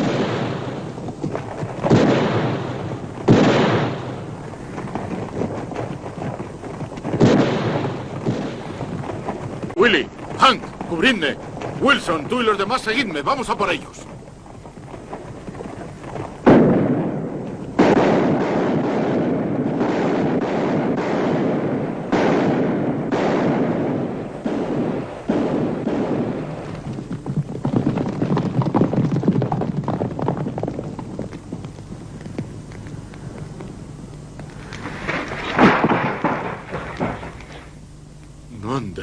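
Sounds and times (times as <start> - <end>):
echoing gunfire barrage: 0.0 - 14.1, 15.0 - 27.2, 34.7 - 37.8.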